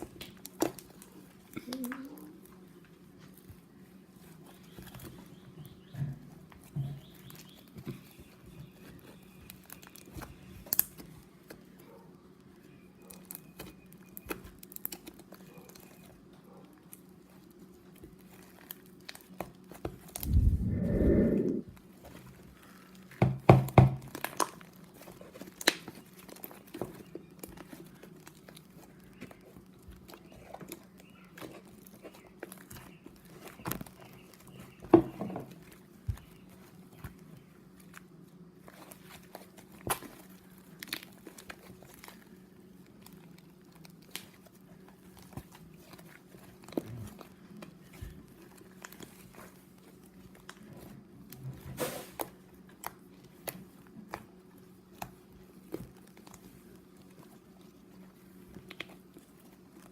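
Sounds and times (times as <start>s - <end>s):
faint low hum: 0.0s - 23.2s
slime squishing crackles and pops: 23.5s - 34.8s.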